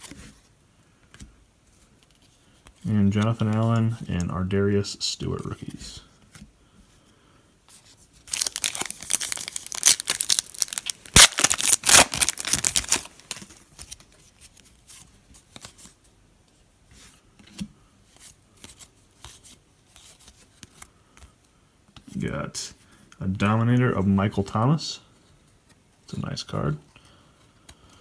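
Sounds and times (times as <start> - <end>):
wrapper tearing and crinkling: 8.3 - 13.7
faint clicks of cards handled: 16.9 - 22.2.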